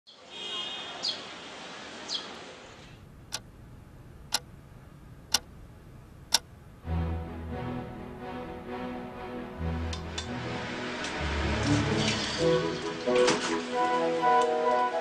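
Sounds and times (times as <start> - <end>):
clock ticking: 4.3 - 4.5.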